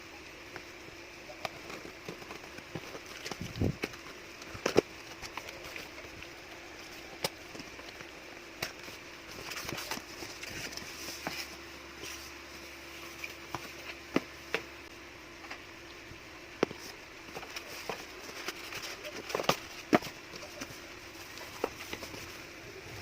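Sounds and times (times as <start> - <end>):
faint steady hiss: 0.0 - 23.0.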